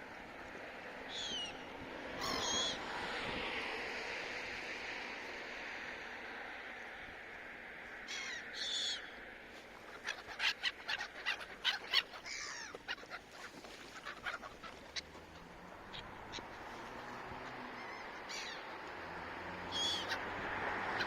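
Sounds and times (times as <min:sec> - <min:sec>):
seagulls calling: 0:01.1 - 0:01.6, 0:02.2 - 0:02.8, 0:08.0 - 0:21.0.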